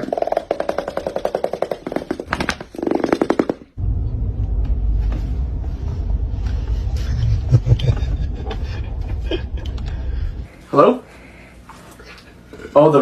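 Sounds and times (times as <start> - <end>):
steady low rumble: 3.8 - 10.6.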